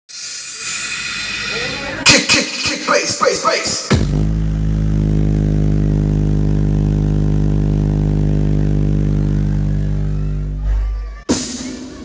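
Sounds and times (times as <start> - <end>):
sustained deep bass tone: 3.2 - 11.3.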